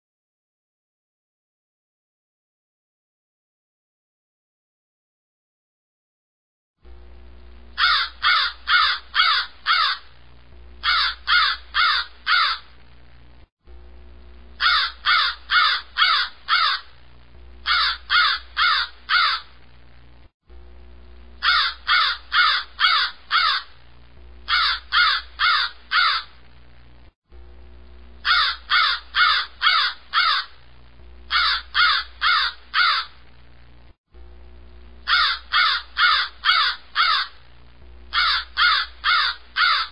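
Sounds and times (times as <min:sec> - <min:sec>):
steady low hum: 0:06.8 - 0:39.9
crow cawing: 0:07.8 - 0:10.1, 0:10.8 - 0:12.7, 0:14.6 - 0:16.9, 0:17.6 - 0:19.6, 0:21.4 - 0:23.8, 0:24.5 - 0:26.4, 0:28.2 - 0:30.6, 0:31.3 - 0:33.2, 0:35.1 - 0:37.4, 0:38.1 - 0:39.9.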